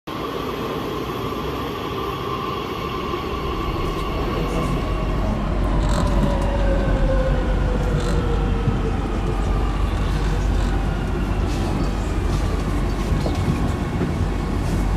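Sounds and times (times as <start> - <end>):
wheels rumbling on rail: 2.9 - 14.9
train motor whine: 7.7 - 8.4.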